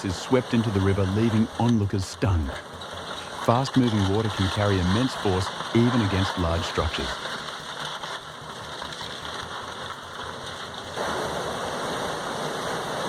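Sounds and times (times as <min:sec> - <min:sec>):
fast-moving water rushing: 0:10.5 - 0:13.0.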